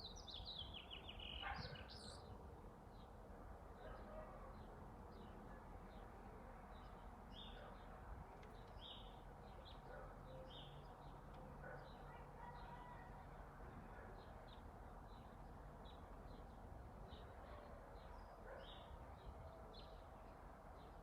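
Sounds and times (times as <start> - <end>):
birds chirping: 0.0 - 2.3.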